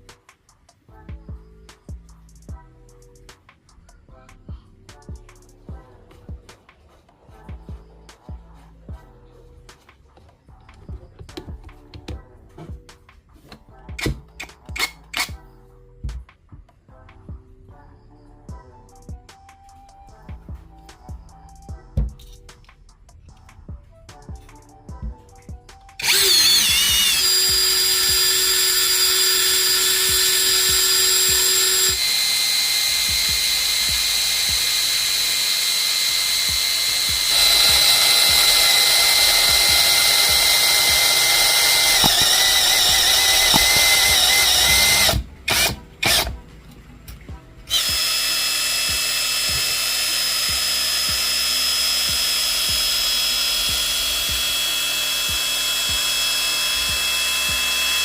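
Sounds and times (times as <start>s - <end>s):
electric drill whining: 26.0s - 46.4s, 47.7s - 58.0s.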